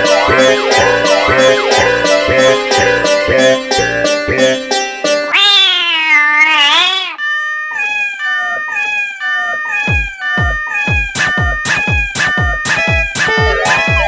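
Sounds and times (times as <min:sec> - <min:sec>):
electronic music: 0:00.0 - 0:04.8, 0:09.8 - 0:14.0
wavering meow-like cry: 0:05.3 - 0:12.6
kick drum: 0:09.9 - 0:14.0.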